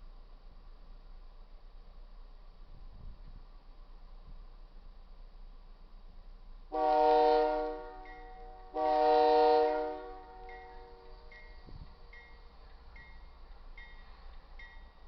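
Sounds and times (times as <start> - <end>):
locomotive air horn blasts: 6.7 - 11.4.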